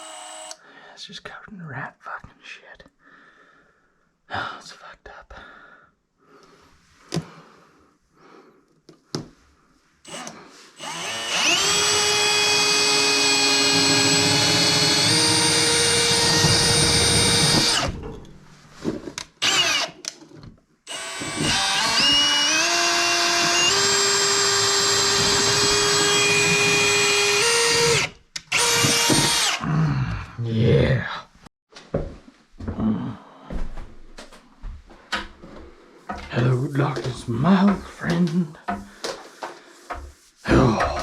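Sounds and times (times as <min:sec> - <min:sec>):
power drill whining: 0:00.0 - 0:00.6, 0:10.0 - 0:18.1, 0:19.4 - 0:20.1, 0:20.9 - 0:29.6.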